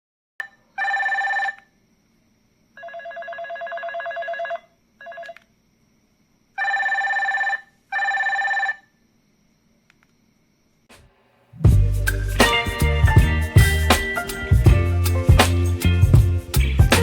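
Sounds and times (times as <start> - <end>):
buzzy electronic phone ringtone: 0.8 - 1.6, 6.6 - 8.9.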